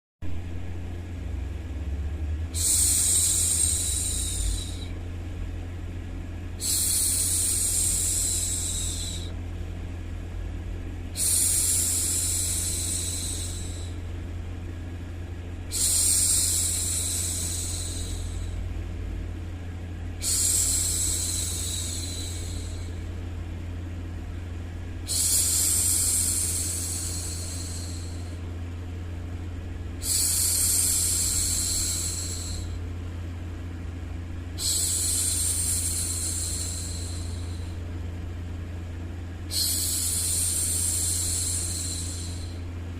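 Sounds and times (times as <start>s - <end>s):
woman hushing shhh: 2.5s - 5.0s, 6.6s - 9.4s, 11.1s - 14.1s, 15.7s - 18.7s, 20.2s - 23.1s, 25.0s - 28.5s, 30.0s - 32.9s, 34.6s - 37.9s, 39.5s - 42.7s.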